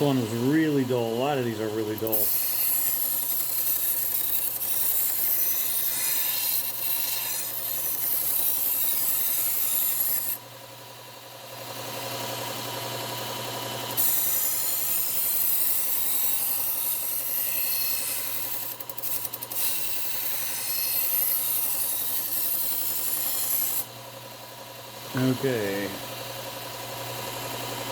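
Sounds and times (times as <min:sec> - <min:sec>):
knife grinding on belt sander: 0:00.0 - 0:10.5, 0:11.4 - 0:24.4
motor hum: 0:00.0 - 0:27.9.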